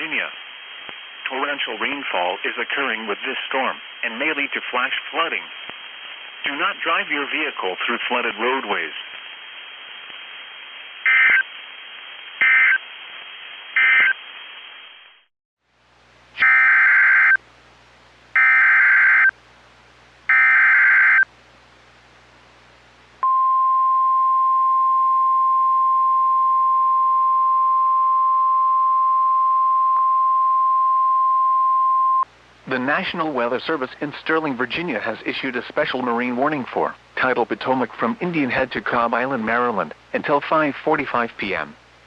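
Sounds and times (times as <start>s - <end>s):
radio static: 0.0s - 15.3s.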